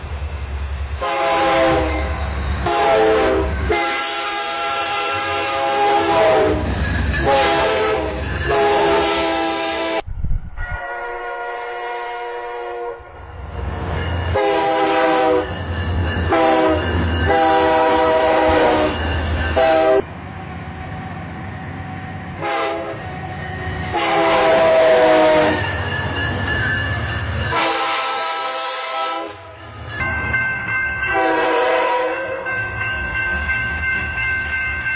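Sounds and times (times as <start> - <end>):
low rumble of passing train: 0.0 - 34.9
locomotive air horn blasts: 1.0 - 10.0, 10.8 - 13.1, 14.4 - 15.5, 16.3 - 19.0, 19.6 - 20.1, 22.4 - 23.0, 23.9 - 25.6, 27.5 - 29.5, 31.1 - 32.4.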